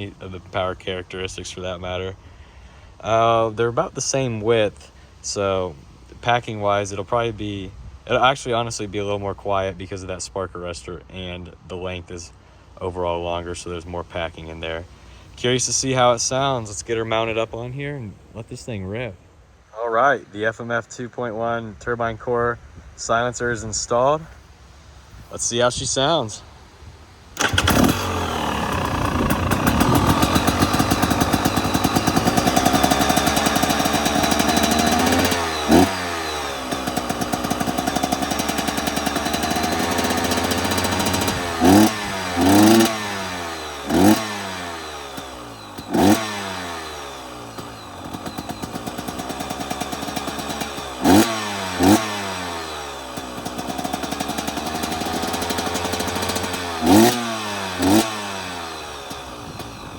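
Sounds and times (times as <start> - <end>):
dirt bike engine revving: 27.4 - 59.9.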